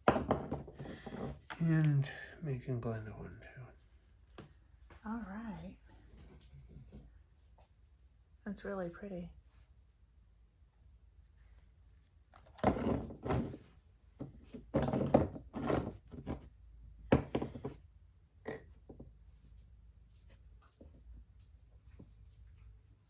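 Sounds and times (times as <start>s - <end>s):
objects knocking on a workbench: 0.0s - 1.6s, 12.6s - 16.5s, 17.1s - 17.8s.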